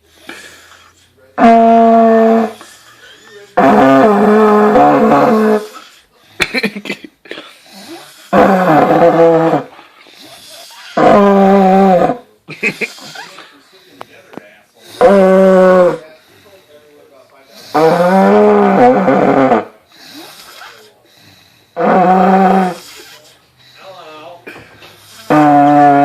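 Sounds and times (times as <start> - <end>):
vuvuzela blasts: 1.4 - 2.7, 3.6 - 5.8, 15.0 - 16.0, 17.7 - 19.8, 21.8 - 23.0, 25.1 - 26.0.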